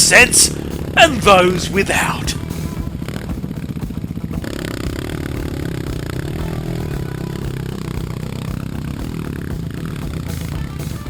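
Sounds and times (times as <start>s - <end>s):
bike rattling and knocking: 0.0s - 11.0s.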